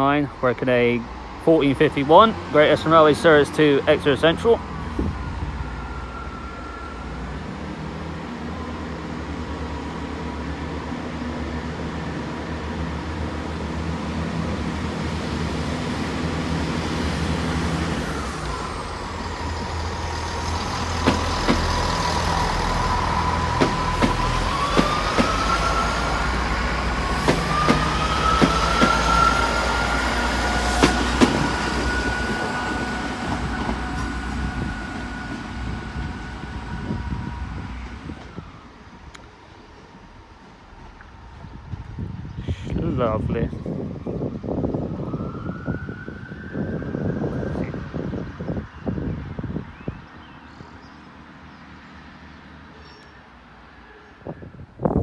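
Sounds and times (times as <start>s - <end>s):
diesel train engines running: 0.0s - 45.1s
train whine rising in pitch: 4.5s - 42.3s
wheels clicking over rail joints: 15.6s - 35.5s.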